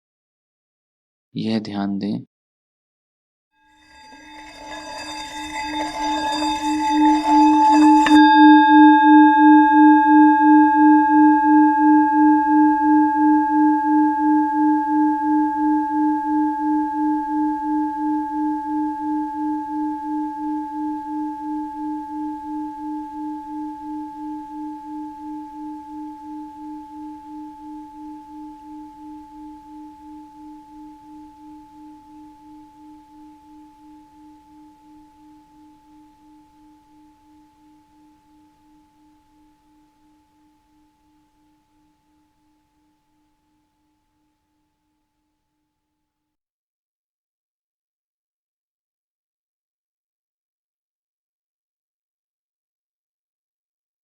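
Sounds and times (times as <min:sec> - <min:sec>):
singing bowl ringing: 0:03.6 - 0:43.6
singing bowl scratchy rubbing: 0:03.7 - 0:40.2.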